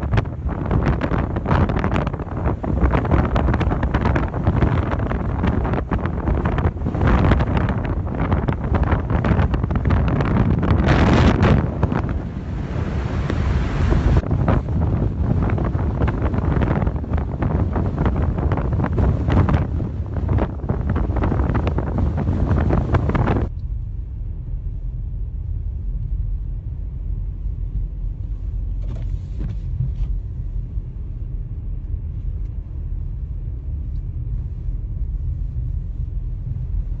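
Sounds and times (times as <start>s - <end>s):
wind gusting against microphone: 0.0s - 23.5s
low rumble: 0.0s - 37.0s.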